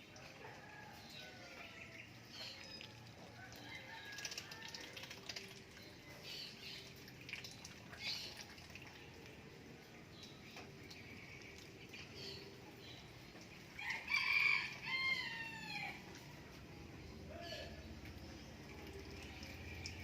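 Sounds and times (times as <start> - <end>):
birds chirping: 5.6 - 16.0.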